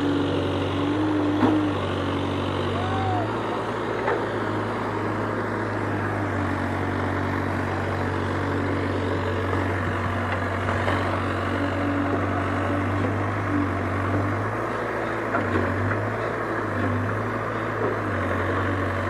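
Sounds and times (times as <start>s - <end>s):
diesel engines running: 0.0s - 19.0s.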